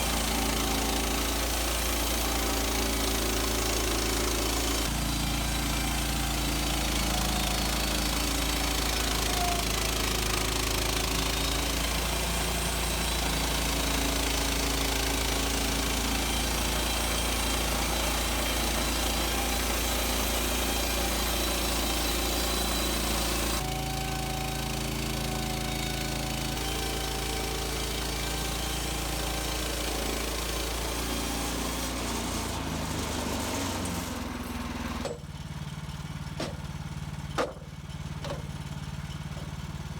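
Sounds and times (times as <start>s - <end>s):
band blade sawing through log: 0.0s - 35.3s
gas engine running under load: 0.0s - 39.9s.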